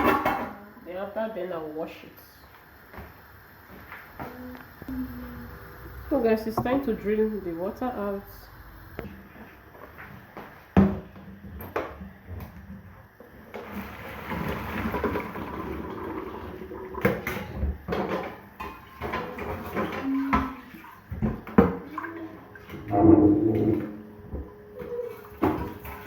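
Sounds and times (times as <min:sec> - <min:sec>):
water pouring from a pot: 0:13.6 - 0:17.4.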